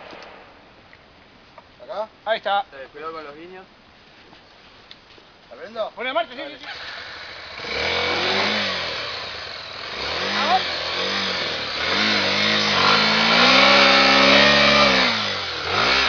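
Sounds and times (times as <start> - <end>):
motorcycle engine revving: 6.6 - 16.0.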